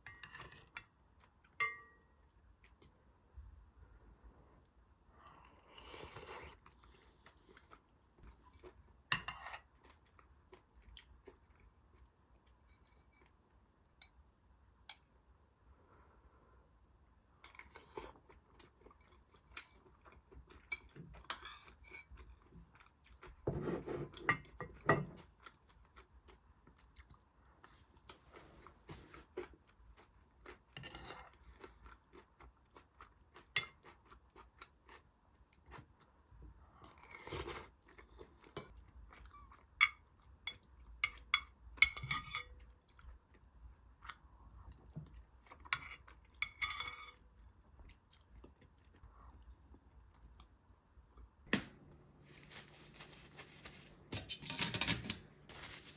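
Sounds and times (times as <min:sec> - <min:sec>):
dishes and utensils clinking: 0:23.5 - 0:25.3, 0:52.5 - 0:55.9
chewing and crunching: 0:25.2 - 0:41.0.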